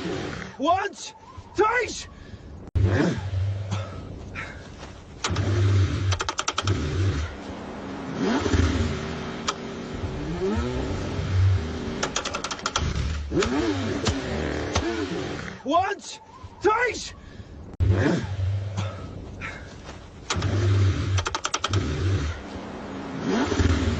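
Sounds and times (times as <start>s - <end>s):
car engine cranking: 5.1s - 7.5s, 8.1s - 15.6s, 20.2s - 23.9s
rapid clicking: 5.2s - 6.8s, 12.0s - 14.9s, 20.2s - 21.9s.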